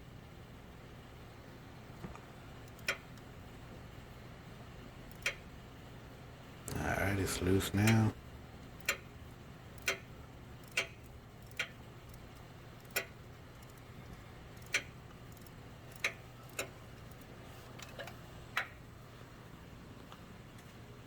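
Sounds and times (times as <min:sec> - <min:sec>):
faint low hum: 0:00.0 - 0:21.0
ratchet clicking: 0:05.1 - 0:05.4, 0:09.8 - 0:13.8, 0:14.6 - 0:18.1.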